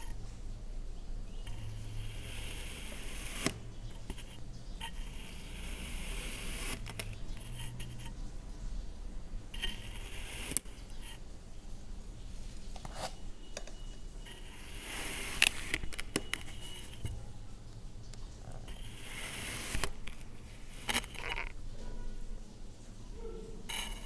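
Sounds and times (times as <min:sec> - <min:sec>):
blade scraping sand: 0:01.5 - 0:04.4, 0:05.0 - 0:07.9, 0:09.6 - 0:11.2, 0:14.3 - 0:15.9, 0:18.7 - 0:20.0.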